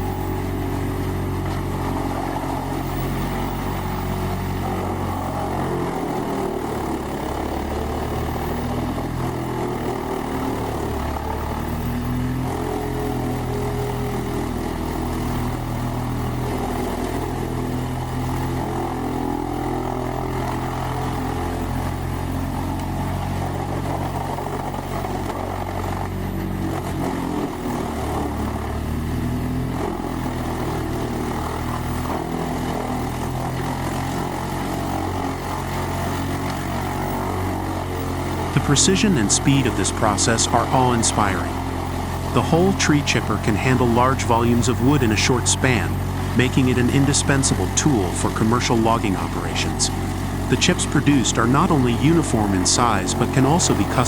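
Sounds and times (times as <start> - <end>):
tree chipper engine running: 0.0 - 54.0.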